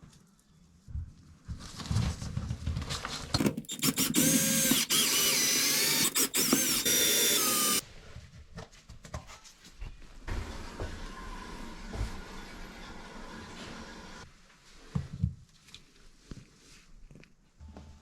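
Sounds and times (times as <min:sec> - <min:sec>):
power drill running: 0:03.4 - 0:07.8.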